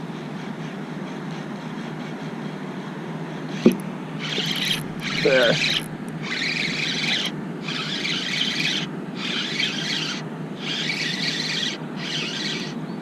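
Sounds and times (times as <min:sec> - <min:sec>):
fishing reel whirring: 0:03.6 - 0:12.8.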